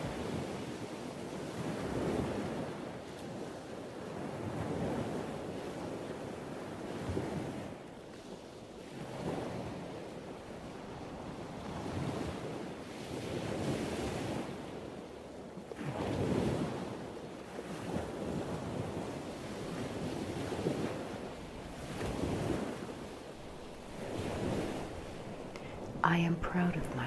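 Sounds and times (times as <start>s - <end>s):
ocean waves breaking: 0.0s - 27.0s.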